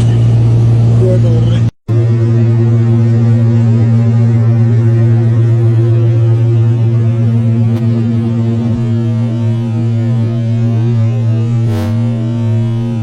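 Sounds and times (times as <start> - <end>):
aircraft engines droning in cabin: 0.0 - 13.0.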